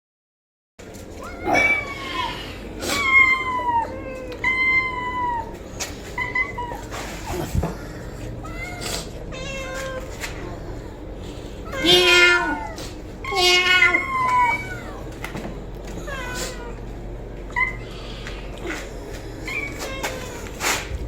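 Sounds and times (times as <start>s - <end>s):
cat meowing: 1.2s - 5.5s, 8.4s - 10.1s, 11.7s - 15.1s, 19.5s - 20.6s.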